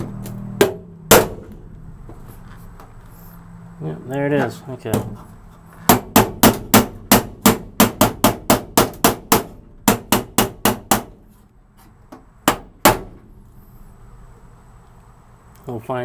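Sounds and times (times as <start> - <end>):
hammer beating sheet steel: 0.0 - 1.6, 5.8 - 11.4, 12.4 - 13.6.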